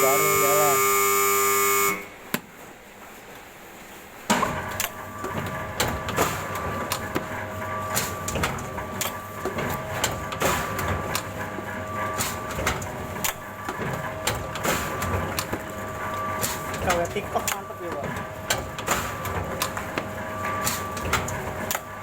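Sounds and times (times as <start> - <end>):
loud electric buzzer: 0.0 - 2.2
machine humming: 0.0 - 2.2
machine clicks and knocks: 4.3 - 22.0.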